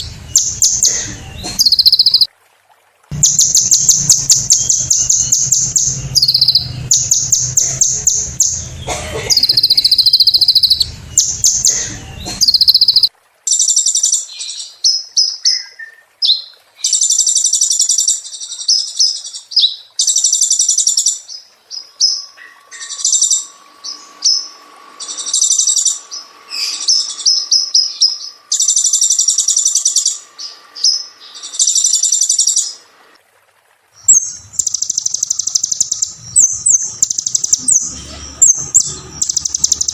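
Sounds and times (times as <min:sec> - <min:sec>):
bird trilling and chattering: 0:00.0 - 0:02.3, 0:03.1 - 0:15.7, 0:16.3 - 0:32.8, 0:34.0 - 0:39.9
low background rumble: 0:00.0 - 0:02.3, 0:03.1 - 0:13.1.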